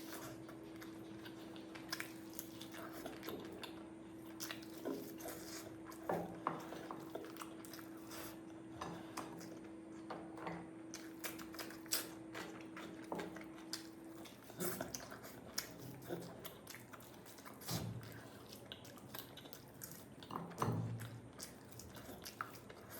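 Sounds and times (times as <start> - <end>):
chewing and mouth smacks: 0.0 - 22.9.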